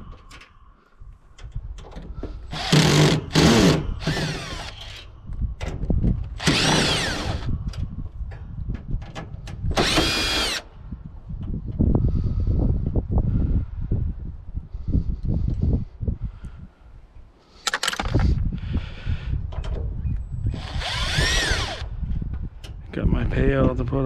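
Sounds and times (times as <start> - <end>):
power drill running: 2.5 - 5.0, 6.4 - 7.5, 9.8 - 10.7, 20.5 - 21.9.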